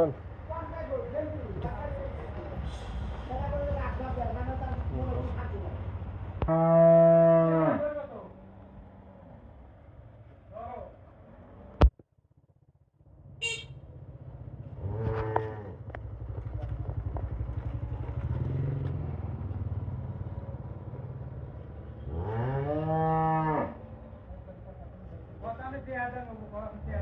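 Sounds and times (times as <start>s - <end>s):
cow mooing: 6.4s - 8.0s, 22.1s - 23.8s.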